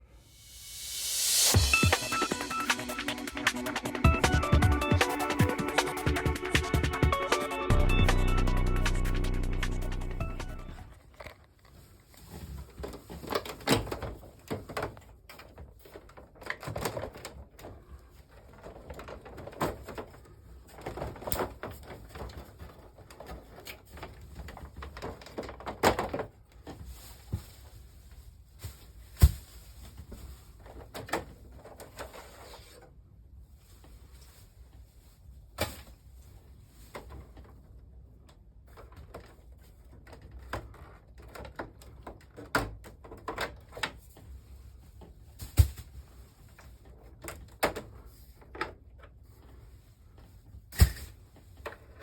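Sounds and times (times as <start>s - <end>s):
plastic clicks and rustling: 10.8s - 26.9s, 36.9s - 44.3s.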